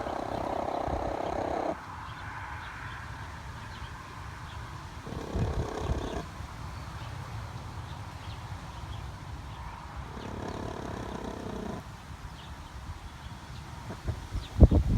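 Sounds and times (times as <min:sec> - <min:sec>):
hen making drawn-out call: 0:00.0 - 0:01.8.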